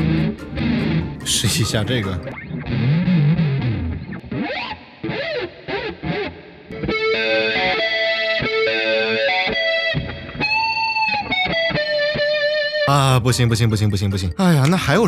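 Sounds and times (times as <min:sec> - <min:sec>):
distorted electric guitar music: 0:00.0 - 0:12.7.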